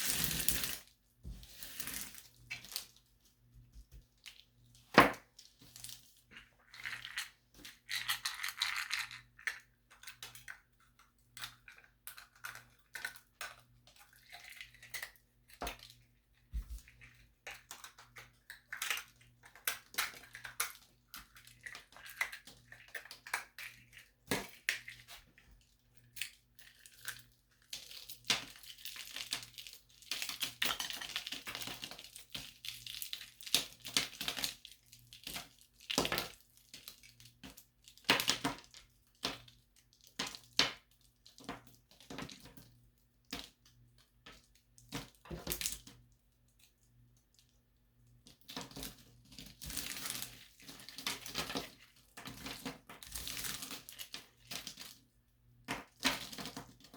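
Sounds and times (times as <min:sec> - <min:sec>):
plaster tiles crunching: 0:00.0 - 0:02.8.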